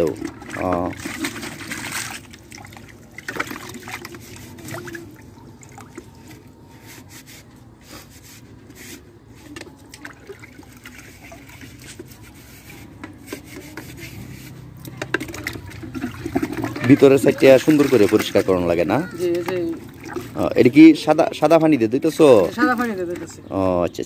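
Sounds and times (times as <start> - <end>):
water trickling and splashing: 0.0 - 6.7, 9.5 - 24.0
scrubbing inside a container: 0.0 - 23.5.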